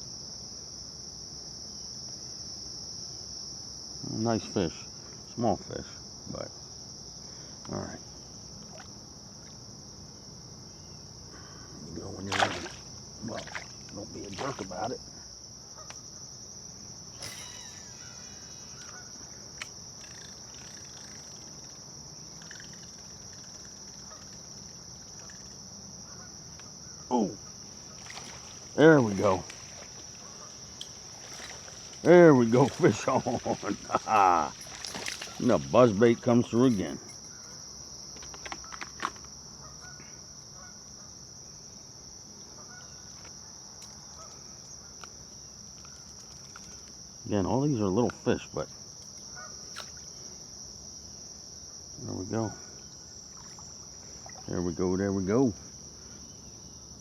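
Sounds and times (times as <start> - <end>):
high-pitched insect drone: 15.8 - 57.0
faint bird chirps: 17.1 - 19.4
faint short calls: 17.1 - 35.9.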